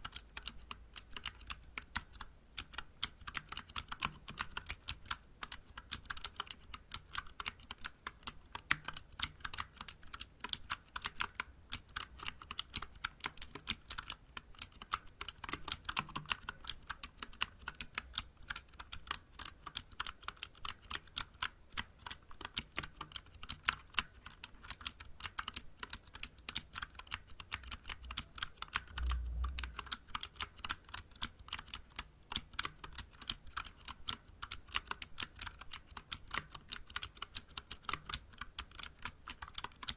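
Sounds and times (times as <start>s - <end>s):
clicky keyboard typing: 0.0s - 39.9s
low bump: 29.0s - 29.8s.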